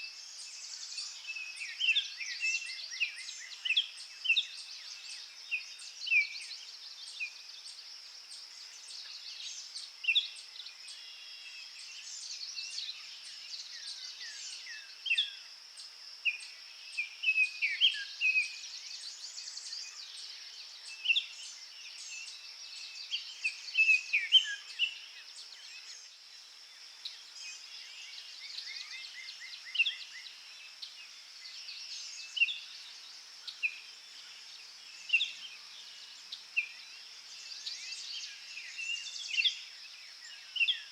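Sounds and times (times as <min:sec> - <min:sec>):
songbirds chirping: 0:00.0 - 0:40.9.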